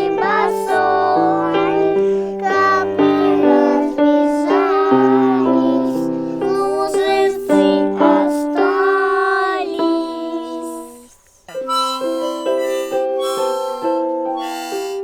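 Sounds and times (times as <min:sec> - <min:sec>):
instrumental sustained notes: 0:11.5 - 0:15.0
melody with gliding notes: 0:11.6 - 0:15.0.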